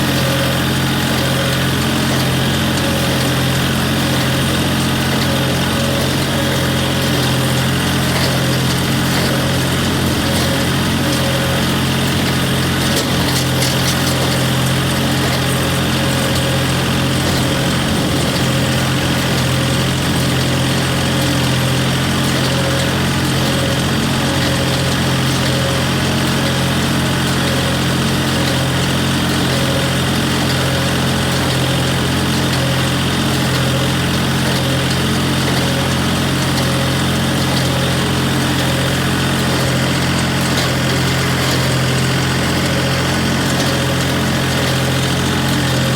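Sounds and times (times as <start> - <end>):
tractor engine running: 0.0 - 45.9.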